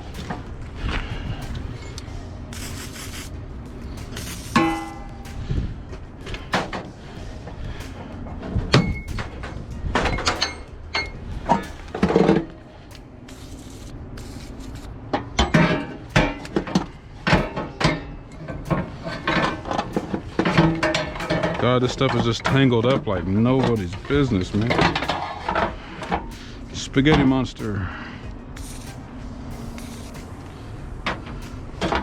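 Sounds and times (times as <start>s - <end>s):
metal strap hooks clanking: 4.6s - 13.0s.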